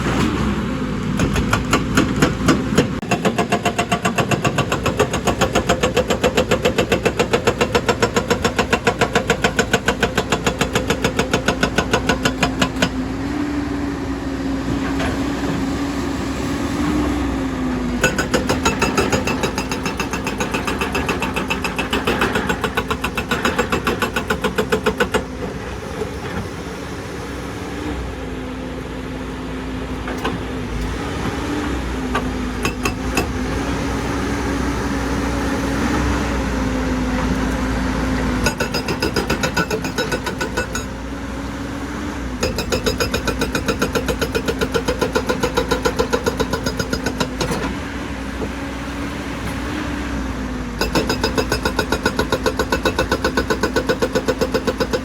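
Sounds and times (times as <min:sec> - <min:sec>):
hydraulic rock breaker pounding rock: 0:00.0 - 0:13.0, 0:18.0 - 0:26.6, 0:38.3 - 0:41.0, 0:42.4 - 0:48.6, 0:50.7 - 0:55.0.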